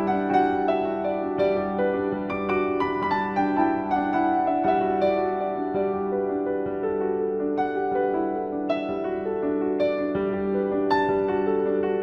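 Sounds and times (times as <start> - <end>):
soft slow piano notes: 0.0 - 12.0.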